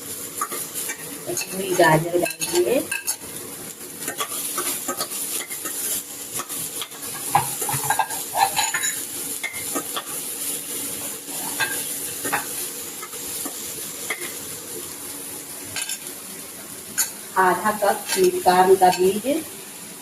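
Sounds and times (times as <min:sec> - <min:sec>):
vegetables sizzling in hot oil: 0:00.0 - 0:20.0
utensil scraping a pan: 0:04.1 - 0:10.2.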